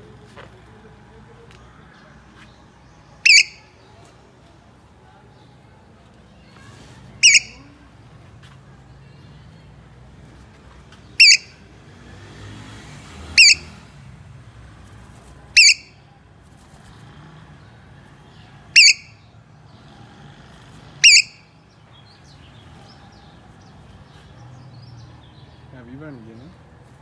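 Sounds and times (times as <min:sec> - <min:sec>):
parrot shrill calls: 0:03.2 - 0:03.7, 0:07.2 - 0:07.6, 0:11.2 - 0:11.5, 0:13.4 - 0:13.7, 0:15.6 - 0:15.9, 0:18.7 - 0:19.2, 0:21.0 - 0:21.4.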